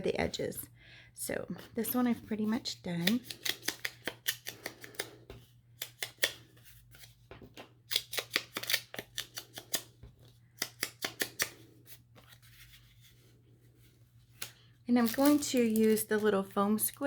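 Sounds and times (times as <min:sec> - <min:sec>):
scissors snipping paper: 0:02.0 - 0:06.4, 0:07.0 - 0:09.9, 0:10.6 - 0:11.6.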